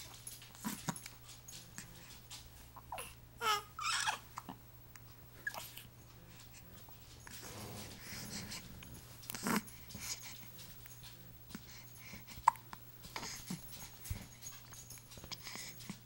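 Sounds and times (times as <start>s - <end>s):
baby squeaking: 3.4s - 4.2s
baby breathing softly: 7.4s - 10.6s, 11.5s - 14.4s, 15.2s - 16.0s.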